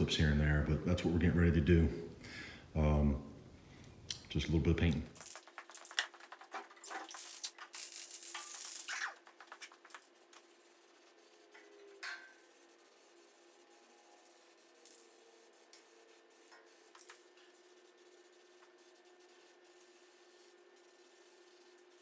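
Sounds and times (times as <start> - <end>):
spray can hissing: 5.2 - 22.0.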